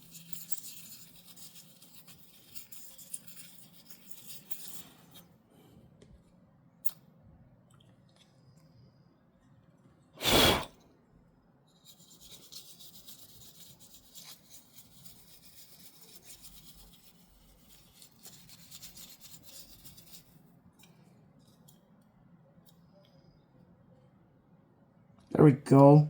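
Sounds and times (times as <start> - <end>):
brush scrubbing laptop parts: 0.0 - 5.2, 11.8 - 20.4.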